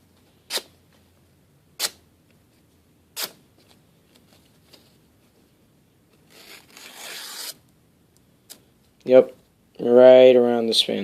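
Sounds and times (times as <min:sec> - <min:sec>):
rustling scrape of handling: 0:06.1 - 0:07.6.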